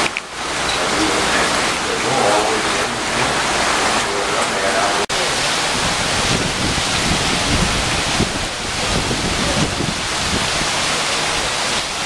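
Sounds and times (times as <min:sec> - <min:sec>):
heavy rain: 0:00.0 - 0:12.0
hurricane-force wind: 0:00.0 - 0:12.0
wind gusts buffeting microphone: 0:05.1 - 0:12.0.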